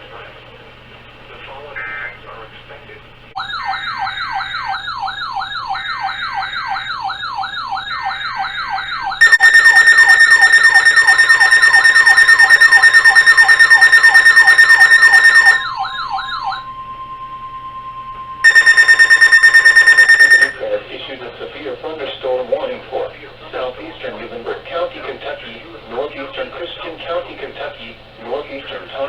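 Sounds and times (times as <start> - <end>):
sweeping siren-like alert tone: 3.4 - 20.6
shrill steady tone: 3.4 - 20.8.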